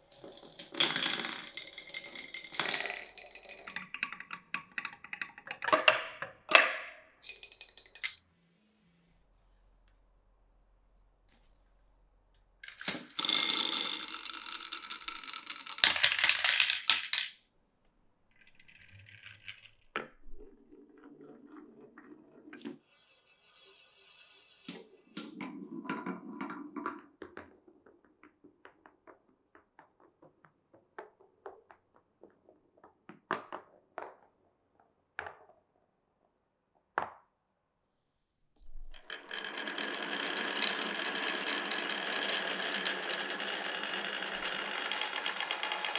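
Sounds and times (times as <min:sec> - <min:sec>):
marbles rolling on wooden track: 0:00.0 - 0:08.2, 0:12.6 - 0:17.4, 0:18.4 - 0:27.1, 0:38.6 - 0:45.9
marbles clicking and clacking: 0:00.1 - 0:08.2, 0:12.6 - 0:17.4, 0:18.4 - 0:19.8, 0:38.7 - 0:45.9.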